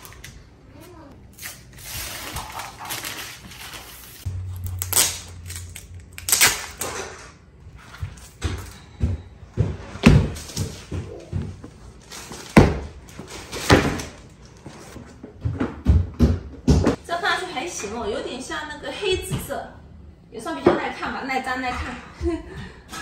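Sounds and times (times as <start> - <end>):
plastic packaging crinkling: 1.3 - 6.7.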